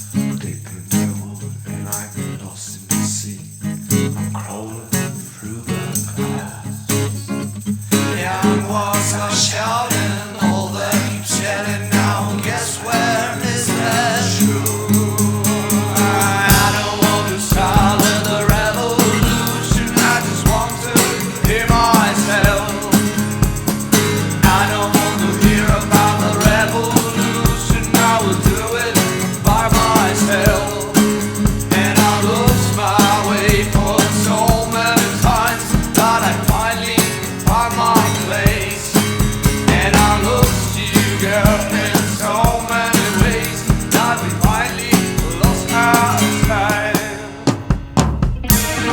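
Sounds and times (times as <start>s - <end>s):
guitar: 0.0s - 48.9s
male singing: 0.3s - 3.6s, 4.2s - 6.9s, 8.0s - 23.4s, 24.3s - 47.6s
drum kit beat: 13.8s - 48.9s.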